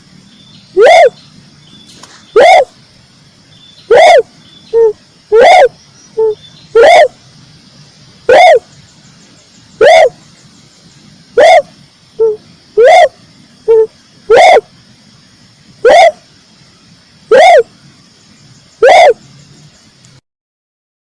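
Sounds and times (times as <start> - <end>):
dove cooing: 0.8 - 1.2, 2.4 - 2.8, 3.9 - 7.2, 8.2 - 8.7, 9.8 - 10.2, 11.4 - 14.7, 15.8 - 16.3, 17.3 - 17.7, 18.8 - 19.2.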